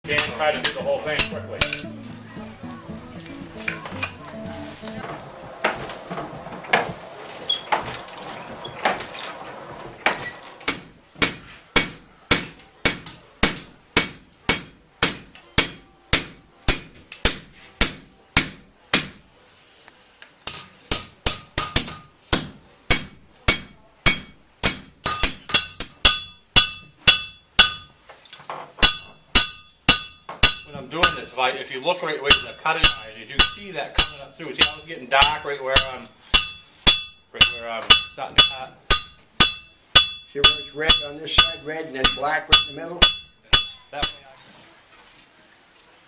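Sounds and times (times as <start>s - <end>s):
hammer striking iron on anvil: 0.1s - 2.2s, 10.7s - 19.3s, 20.5s - 28.0s, 28.8s - 31.3s, 32.3s - 44.2s.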